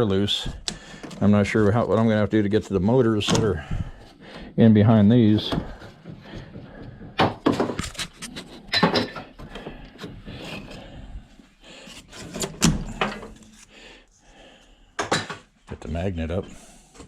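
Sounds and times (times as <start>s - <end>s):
hand tools clicking and knocking: 5.4s - 10.7s.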